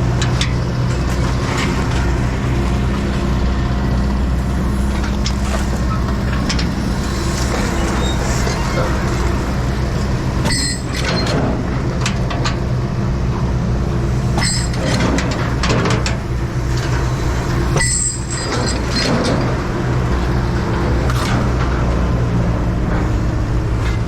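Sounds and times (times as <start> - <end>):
large engine running: 0.0 - 24.0
scrap metal clinking and squealing: 7.5 - 9.2, 10.4 - 11.4, 14.4 - 16.1, 17.8 - 19.6.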